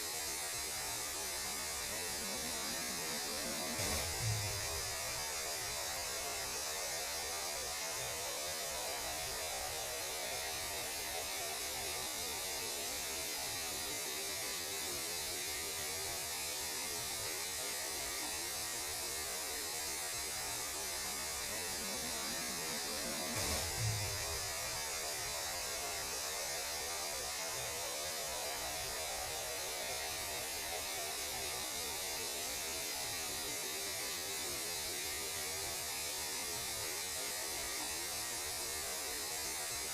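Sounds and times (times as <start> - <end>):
electronic static hiss: 0.0 - 39.9
underlying hum: 2.0 - 5.4, 21.8 - 24.9.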